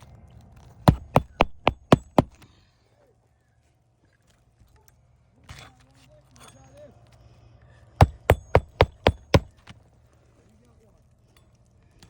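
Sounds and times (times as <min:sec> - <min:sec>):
hammer blows on roofing nail: 0:00.9 - 0:02.4, 0:08.0 - 0:09.6.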